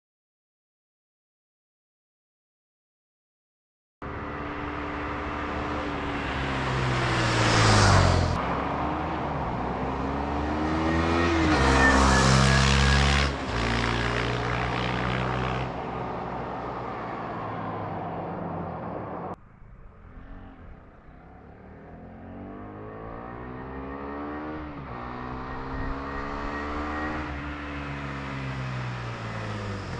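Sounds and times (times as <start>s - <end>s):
motorcycle engine revving: 4.1s - 15.8s, 19.7s - 29.9s.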